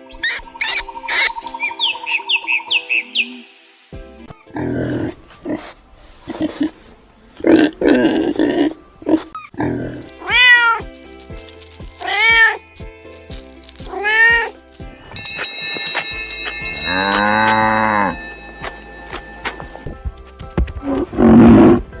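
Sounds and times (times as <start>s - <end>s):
background music: 0.0s - 22.0s
cat meowing: 10.2s - 10.9s, 12.0s - 12.6s, 13.9s - 14.5s.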